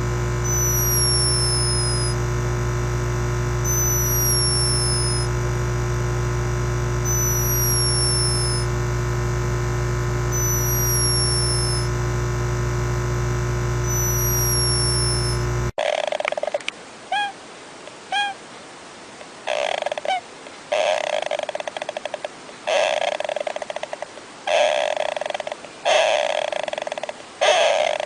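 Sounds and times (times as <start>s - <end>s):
electronic hum drone: 0.0s - 15.7s
high falling chirp: 0.4s - 2.2s, 3.6s - 5.3s, 7.0s - 8.7s, 10.3s - 11.9s, 13.8s - 15.5s.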